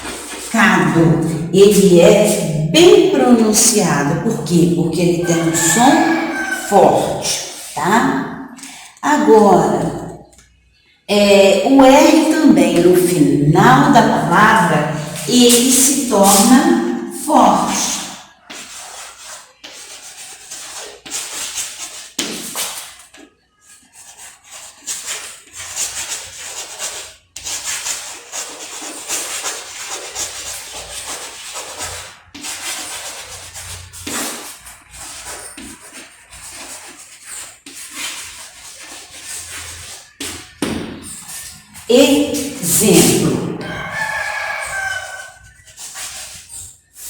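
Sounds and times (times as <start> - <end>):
handwriting scratching: 0.0 - 2.5, 5.0 - 7.8, 14.7 - 47.0.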